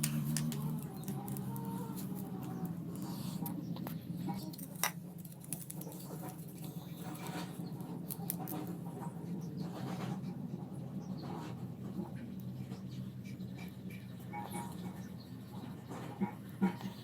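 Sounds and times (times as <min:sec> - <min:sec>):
scratching and rustling: 0:00.0 - 0:10.5
low steady hum: 0:00.0 - 0:17.0.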